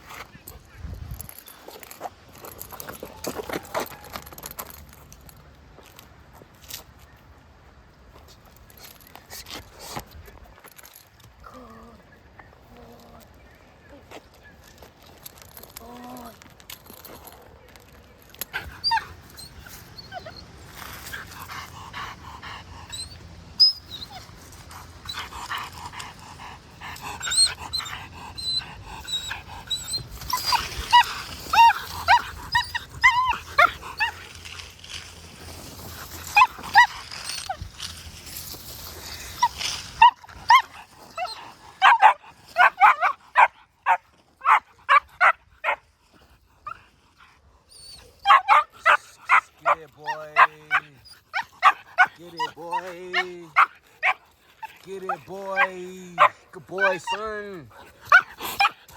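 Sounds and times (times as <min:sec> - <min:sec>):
dog whining and yelping: 0:18.4 - 0:34.7, 0:35.9 - 0:37.9, 0:39.0 - 0:45.8, 0:47.7 - 0:57.2, 0:57.8 - 0:58.9
dog barking rapidly: 0:48.3 - 0:52.1, 0:55.1 - 0:57.0.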